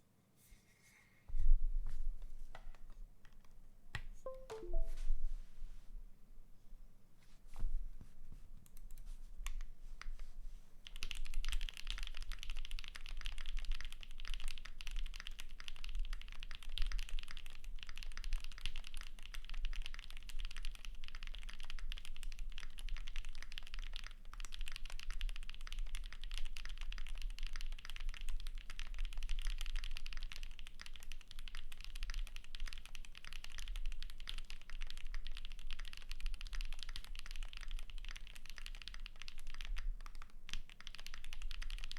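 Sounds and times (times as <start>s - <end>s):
typing on mechanical keyboard: 10.8s - 41.9s.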